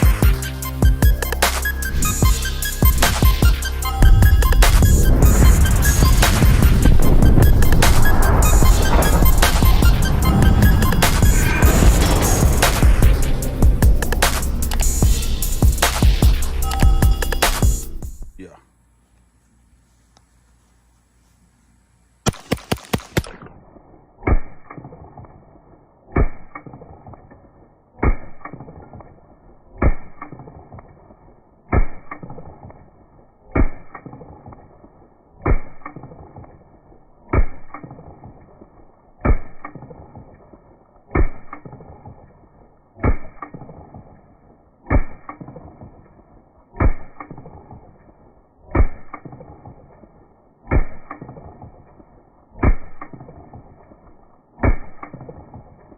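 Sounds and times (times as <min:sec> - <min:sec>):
slowed deep muffled gunshots: 0:00.0 - 0:18.3, 0:22.3 - 0:55.9
pistol shots: 0:22.3 - 0:29.2.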